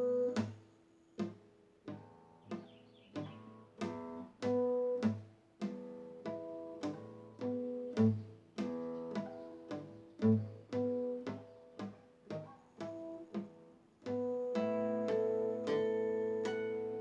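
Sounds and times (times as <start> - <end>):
instrumental string music with bass: 1.9 - 17.0.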